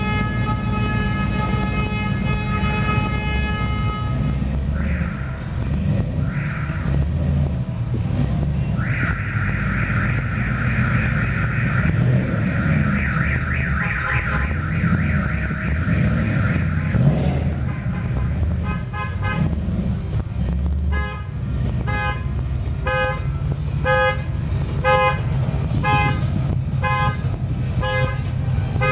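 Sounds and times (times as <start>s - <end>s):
car alarm warbling siren: 4.8s - 5.4s, 6.2s - 7.0s, 8.8s - 17.2s
car alarm beeps: 8.8s - 17.1s.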